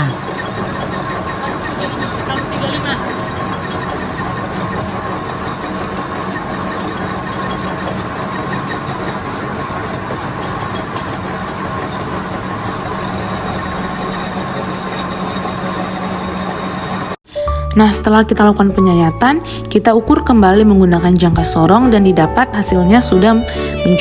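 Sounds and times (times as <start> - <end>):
metal lathe running: 0.0 - 17.2.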